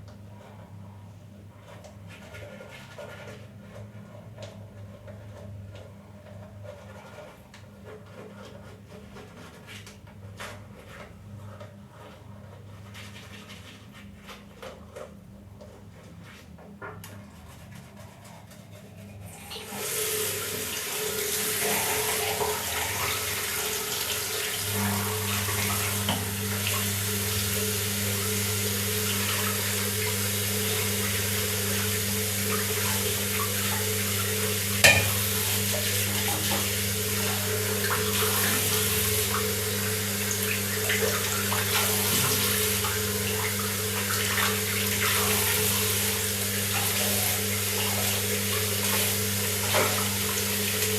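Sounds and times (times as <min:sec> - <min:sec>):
tap water running into sink: 0:19.3 - 0:50.9.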